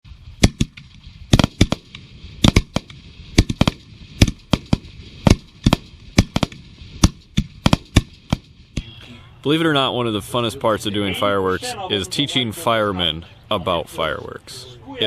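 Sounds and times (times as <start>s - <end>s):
fireworks bangs: 0.2s - 8.9s.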